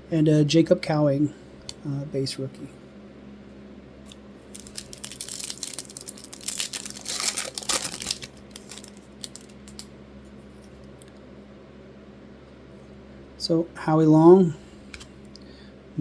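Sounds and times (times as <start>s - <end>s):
foil wrapper tearing and crinkling: 4.4s - 9.9s.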